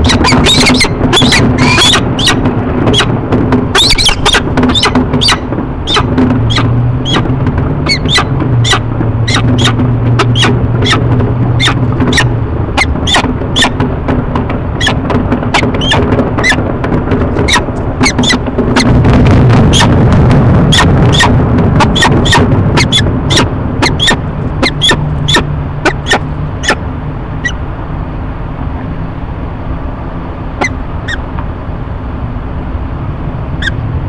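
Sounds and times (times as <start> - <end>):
falcon alarm calls: 0.0 - 13.8, 14.8 - 16.6, 17.4 - 18.9, 19.7 - 19.9, 20.7 - 26.8, 30.6 - 31.2
rough hum: 0.0 - 34.0.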